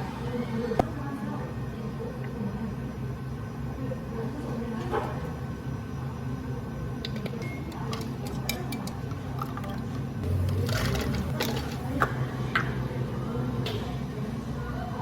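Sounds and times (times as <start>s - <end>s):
equipment humming: 10.2s - 13.9s.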